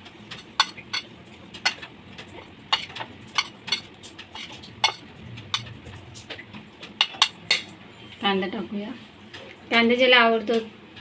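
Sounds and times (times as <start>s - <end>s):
spoon clinking against a bowl: 0.6s - 1.8s, 2.7s - 5.0s.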